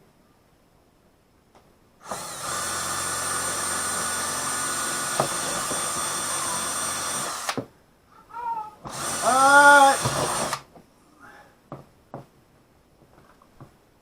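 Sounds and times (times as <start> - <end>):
power drill running: 2.0 - 7.6, 8.9 - 10.7.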